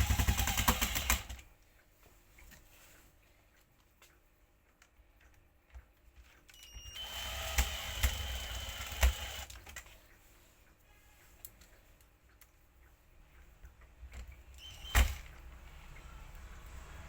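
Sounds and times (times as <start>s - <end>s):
small electric motor whirring: 6.9s - 9.5s.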